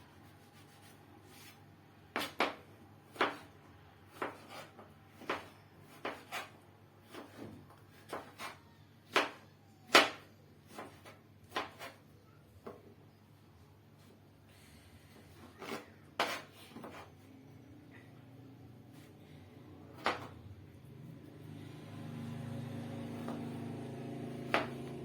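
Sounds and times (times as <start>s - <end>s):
knife chopping on board: 2.1s - 3.5s, 4.1s - 12.0s, 15.4s - 17.1s, 20.0s - 20.4s, 23.1s - 23.6s, 24.4s - 25.0s.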